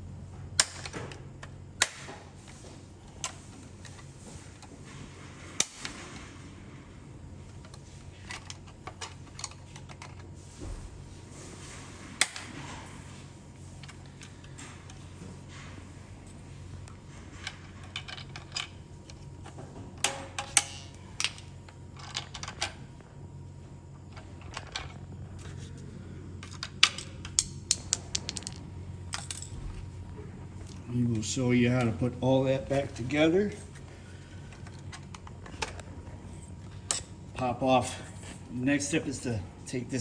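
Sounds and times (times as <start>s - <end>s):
steady low hum: 0.0s - 40.0s
plastic parts clicking: 26.4s - 28.6s.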